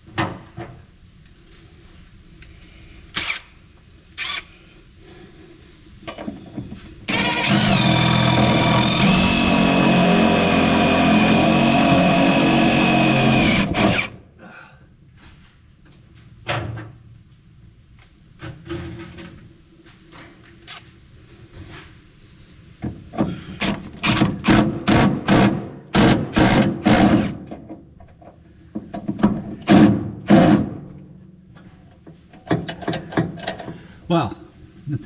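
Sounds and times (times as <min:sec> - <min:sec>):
power drill bursts: 0:07.1 - 0:14.2, 0:24.0 - 0:27.4.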